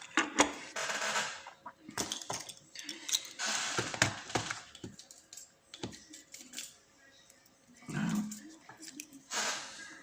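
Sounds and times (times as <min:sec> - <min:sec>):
metal parts clicking and clinking: 0:02.0 - 0:03.4, 0:04.7 - 0:06.8.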